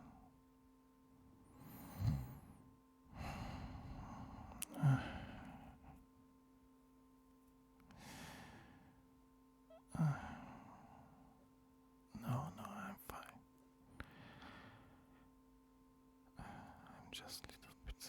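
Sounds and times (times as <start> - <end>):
man breathing heavily: 1.6 - 6.0, 8.0 - 9.0, 14.0 - 15.3
man sighing: 4.6 - 5.6.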